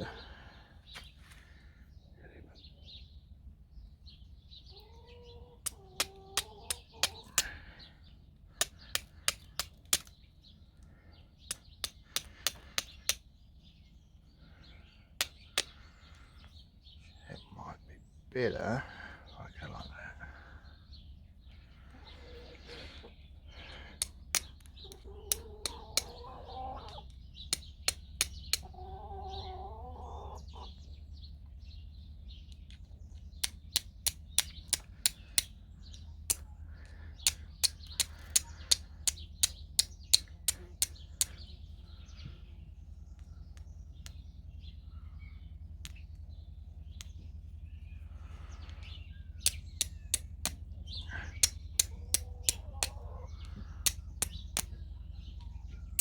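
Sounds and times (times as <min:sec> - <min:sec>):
bird calling: 0:04.6 - 0:56.0
striker clicking on flint: 0:05.6 - 0:07.6, 0:08.5 - 0:10.2, 0:11.4 - 0:13.3, 0:15.2 - 0:15.8, 0:23.9 - 0:26.2, 0:27.4 - 0:28.7, 0:33.3 - 0:35.6, 0:36.2 - 0:36.5, 0:37.2 - 0:41.5, 0:49.4 - 0:54.8.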